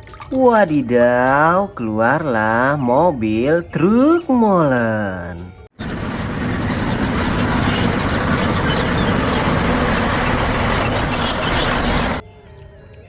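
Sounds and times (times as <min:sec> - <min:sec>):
truck engine running: 0:05.8 - 0:12.2.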